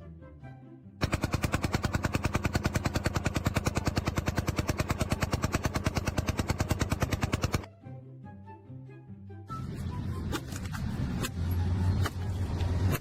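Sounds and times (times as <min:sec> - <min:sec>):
machine hammering rapidly: 0:01.0 - 0:07.7.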